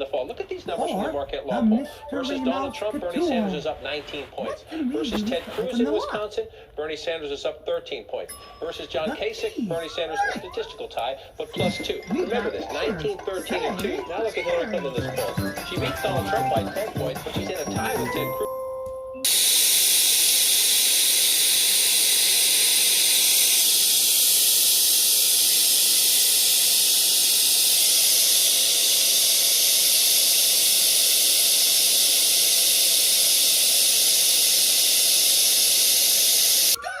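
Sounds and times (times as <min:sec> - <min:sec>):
static hiss: 0:02.1 - 0:06.3, 0:19.3 - 0:36.8.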